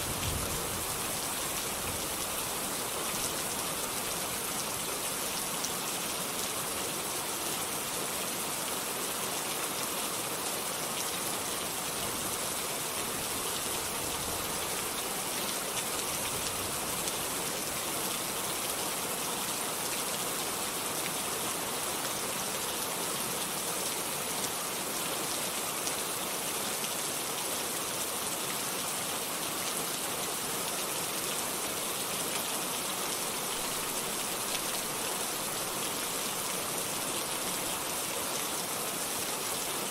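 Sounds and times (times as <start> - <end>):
rain hiss: 0.0 - 39.9.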